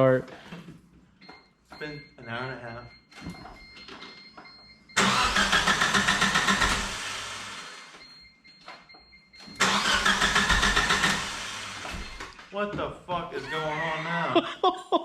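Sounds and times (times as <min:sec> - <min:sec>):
car engine cranking on starter: 0:05.0 - 0:08.0, 0:09.6 - 0:12.4.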